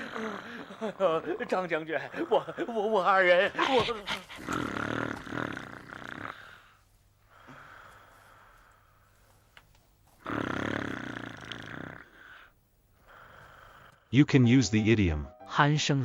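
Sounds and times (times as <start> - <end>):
person snoring loudly: 0.0 - 1.1, 3.6 - 6.8, 10.2 - 12.5
in-breath: 3.6 - 9.5, 12.0 - 14.1.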